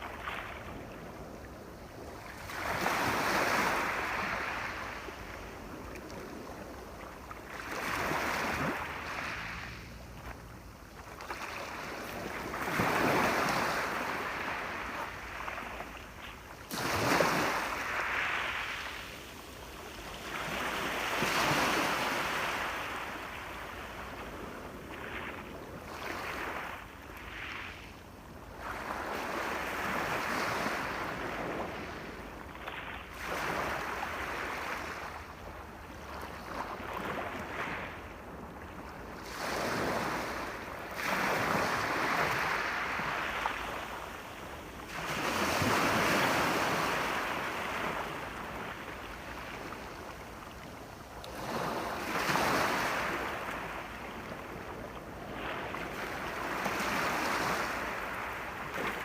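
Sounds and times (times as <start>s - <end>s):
ocean waves breaking: 7.0s - 27.8s.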